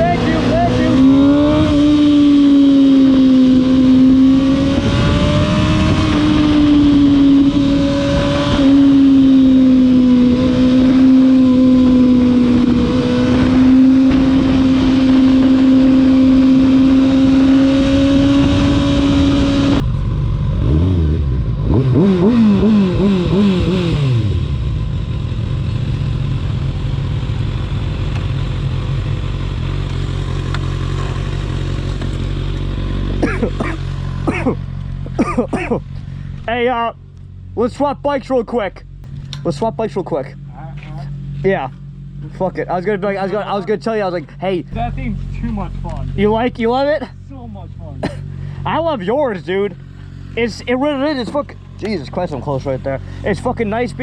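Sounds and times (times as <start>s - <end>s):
motorcycle engine revving: 0.0s - 36.7s, 38.9s - 54.0s
wind rush: 0.8s - 19.9s.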